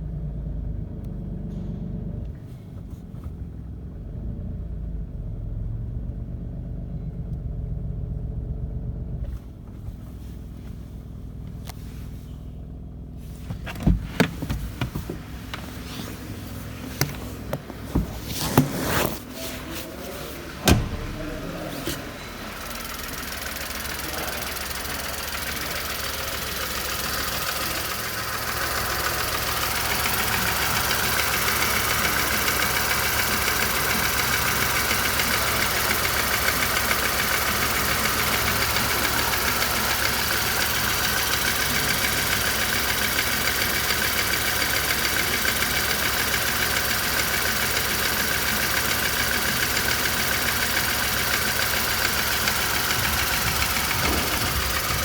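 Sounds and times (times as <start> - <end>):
car engine knocking: 13.5 - 18.7, 20.5 - 55.0.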